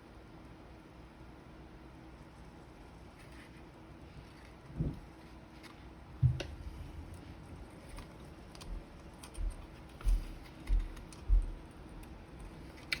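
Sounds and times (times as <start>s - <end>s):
soft low thumps: 8.7s - 11.7s.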